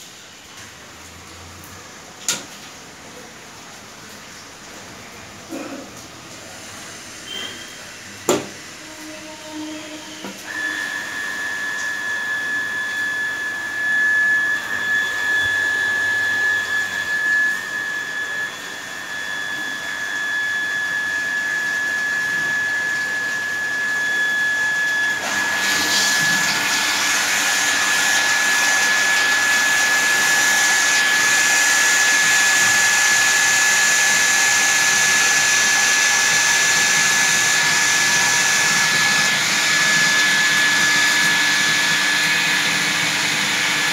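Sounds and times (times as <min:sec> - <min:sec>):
pump motor whine: 0:00.0 - 0:43.9.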